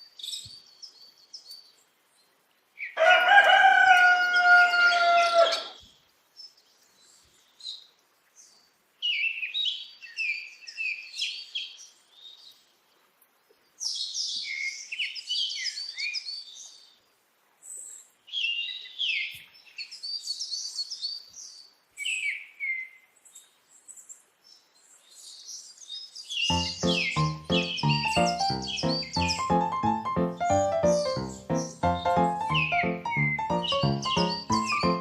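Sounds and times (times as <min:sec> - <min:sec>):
small birds chirping: 0:00.0 - 0:03.0, 0:05.3 - 0:35.0.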